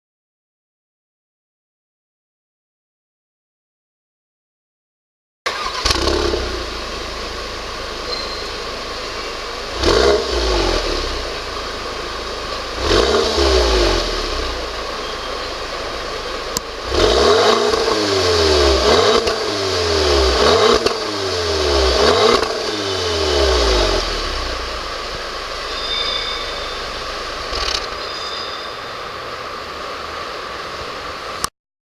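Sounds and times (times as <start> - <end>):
car engine idling and revving: 5.5 - 28.1, 29.0 - 31.5
sharp click: 27.5 - 28.0.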